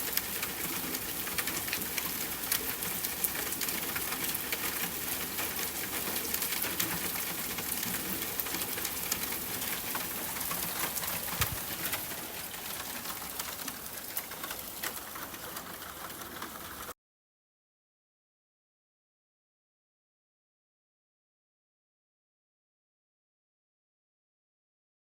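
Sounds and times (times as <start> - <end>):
raindrops pattering and ticking: 0.0 - 17.0
soft rain falling: 0.0 - 17.0.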